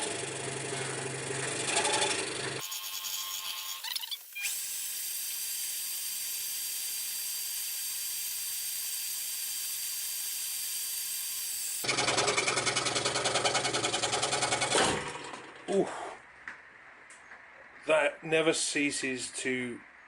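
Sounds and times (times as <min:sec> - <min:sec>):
scroll saw cutting wood: 0:00.0 - 0:15.5.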